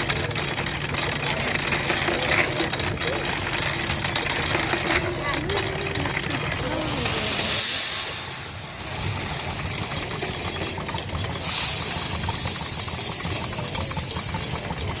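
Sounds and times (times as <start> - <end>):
hay baler engine rumbling: 0.0 - 15.0
loud high hiss: 6.8 - 10.2.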